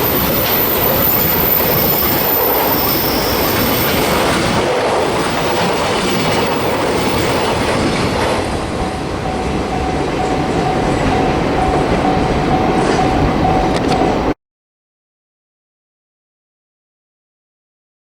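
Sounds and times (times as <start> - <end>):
level crossing warning bell: 0.0 - 14.4
train wheels clacking on rails: 0.0 - 14.4.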